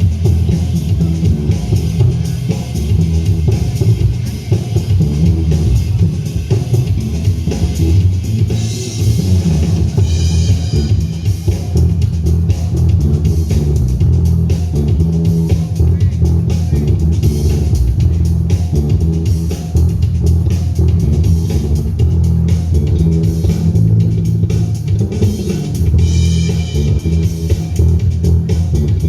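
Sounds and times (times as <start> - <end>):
drum kit: 0.0 - 29.0
electric bass solo: 0.0 - 29.0.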